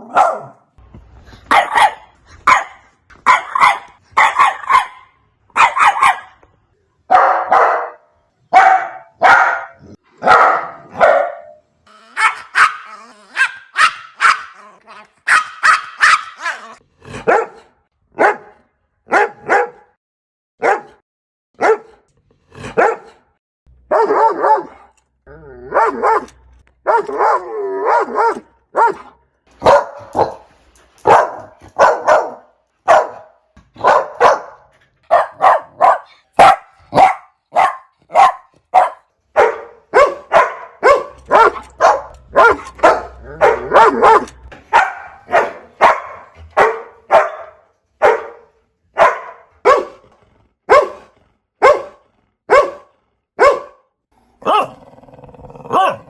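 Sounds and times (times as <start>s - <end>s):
puppies barking: 0.0s - 0.6s, 1.5s - 6.4s, 8.6s - 17.5s, 29.6s - 50.0s, 50.7s - 51.0s, 54.4s - 54.8s, 55.7s - 56.0s.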